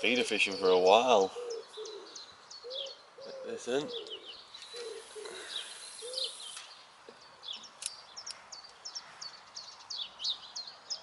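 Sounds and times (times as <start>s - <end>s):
songbirds chirping: 0.0s - 11.0s
low bird coo: 1.1s - 6.6s
steady hiss: 4.5s - 7.0s
sharp click: 7.8s - 8.4s.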